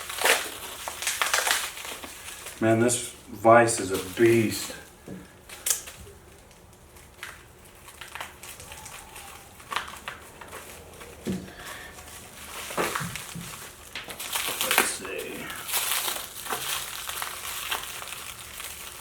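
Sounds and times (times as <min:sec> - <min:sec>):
packaging crinkling and tearing: 0:00.0 - 0:19.0.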